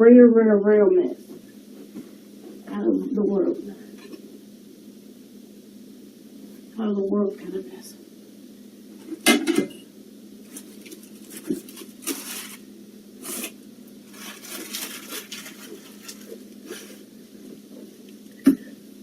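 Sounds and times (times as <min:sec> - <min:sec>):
faint steady hum: 0:00.0 - 0:19.0
household items rustling and knocking: 0:10.5 - 0:12.6, 0:14.1 - 0:17.9.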